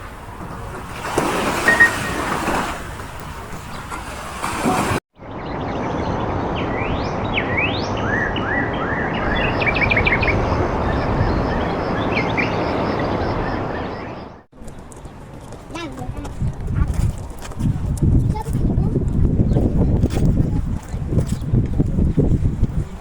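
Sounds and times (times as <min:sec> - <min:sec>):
birds chirping: 0:03.1 - 0:16.2.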